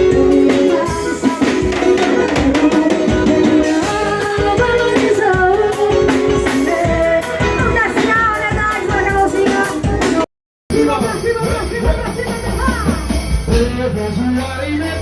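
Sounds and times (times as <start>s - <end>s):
person singing: 0.0s - 11.0s
steady drum beat: 0.0s - 14.4s
band music: 0.0s - 15.0s.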